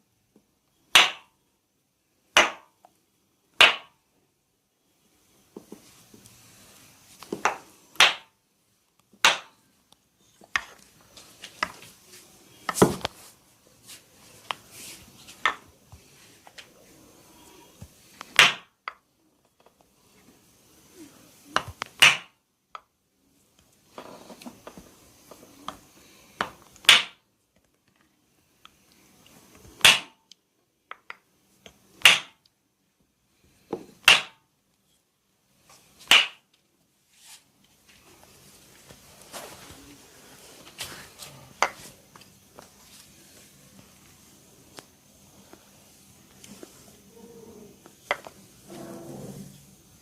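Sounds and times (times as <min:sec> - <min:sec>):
hands slapping body: 0:07.4 - 0:08.3, 0:36.0 - 0:36.4
rubbing rustle: 0:13.0 - 0:15.4.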